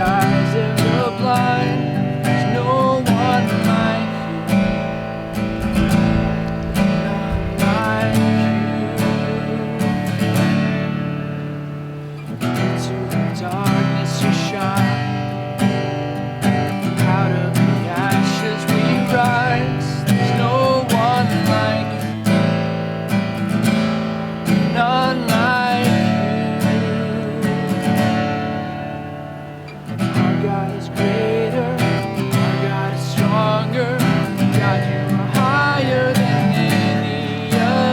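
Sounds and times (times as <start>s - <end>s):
person singing: 0.0s - 5.0s, 7.1s - 10.7s, 12.6s - 15.4s, 16.7s - 22.2s, 24.6s - 28.4s, 30.0s - 37.9s
acoustic guitar strumming: 0.0s - 37.9s.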